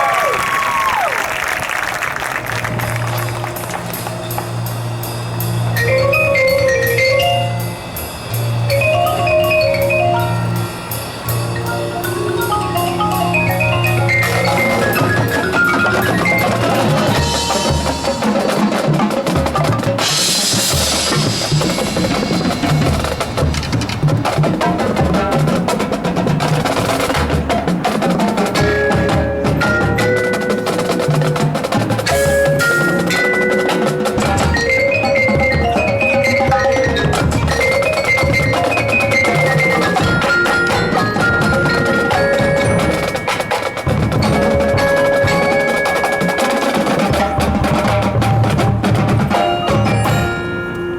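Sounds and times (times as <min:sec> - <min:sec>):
drums: 0:00.0 - 0:50.9
marching band playing: 0:00.0 - 0:50.9
mallet instruments: 0:02.6 - 0:50.9
cymbal crash: 0:20.0 - 0:24.0.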